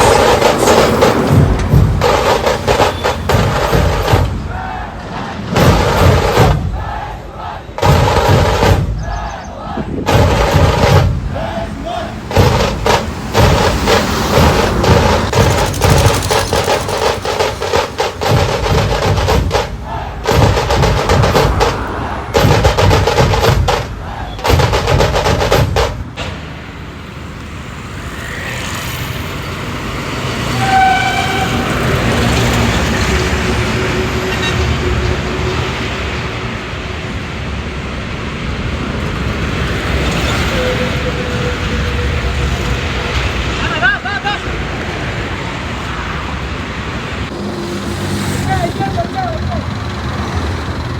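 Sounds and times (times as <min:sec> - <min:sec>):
road traffic noise: 0:00.0 - 0:50.9
dense clatter of sharp strokes: 0:12.3 - 0:26.4
vehicle horn toot: 0:30.5 - 0:31.8.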